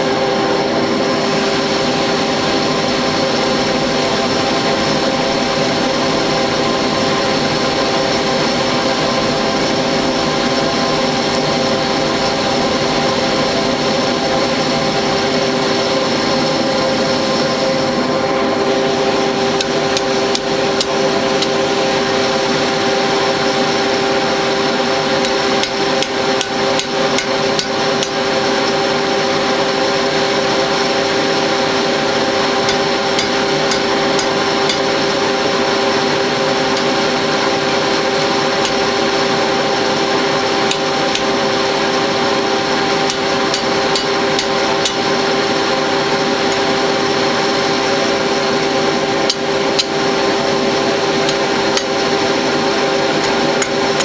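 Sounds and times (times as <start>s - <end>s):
forge blower humming: 0.0s - 54.0s
hammer striking metal: 25.2s - 28.2s, 32.6s - 35.0s, 43.1s - 45.1s.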